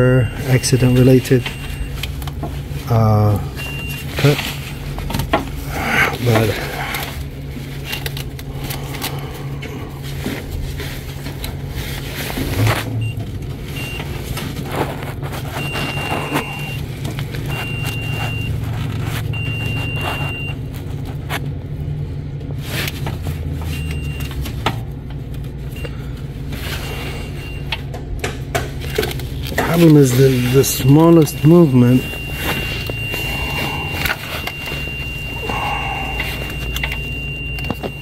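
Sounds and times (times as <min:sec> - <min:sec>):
continuity tester short beeps: 0:00.0 - 0:02.0, 0:03.5 - 0:04.6, 0:15.6 - 0:16.8, 0:17.5 - 0:18.6, 0:19.3 - 0:20.6, 0:23.7 - 0:24.4, 0:29.7 - 0:38.0
steady low hum: 0:00.0 - 0:38.0.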